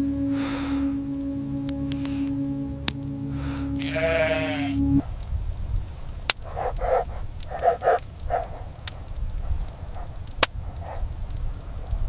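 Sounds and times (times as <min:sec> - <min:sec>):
steady low rumble: 0:00.0 - 0:06.3
dog-like yaps: 0:06.5 - 0:08.6.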